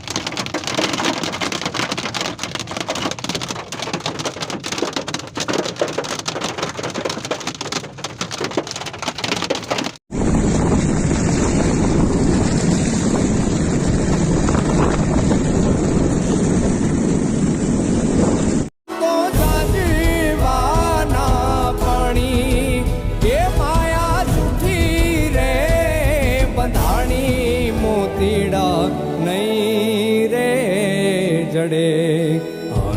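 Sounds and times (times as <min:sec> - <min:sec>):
hailstones clattering on hard surfaces: 0:00.0 - 0:10.0.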